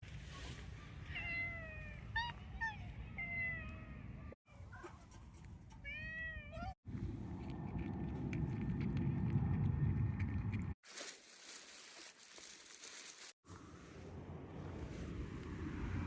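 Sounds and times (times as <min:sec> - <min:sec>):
steady low rumble: 0:06.9 - 0:10.8.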